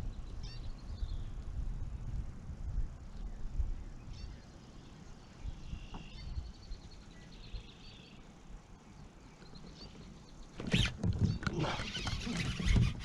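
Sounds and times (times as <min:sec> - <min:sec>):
songbirds chirping: 0:00.0 - 0:02.2, 0:03.0 - 0:13.0
wind rumble: 0:00.0 - 0:07.7.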